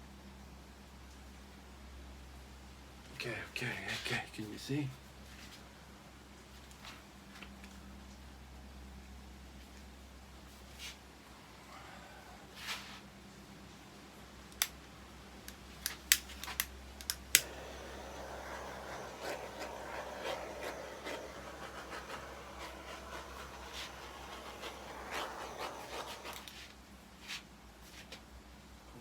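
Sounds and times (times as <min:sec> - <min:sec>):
scratching and rubbing by hand: 0:17.4 - 0:26.6.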